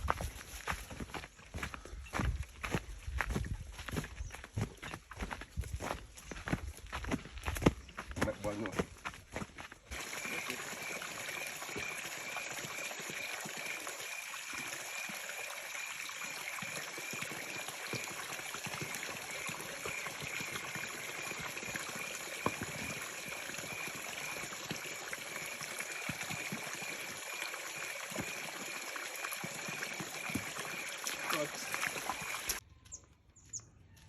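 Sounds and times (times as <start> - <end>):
river water flowing: 9.9 - 32.6
constant high-pitched tone: 9.9 - 34.0.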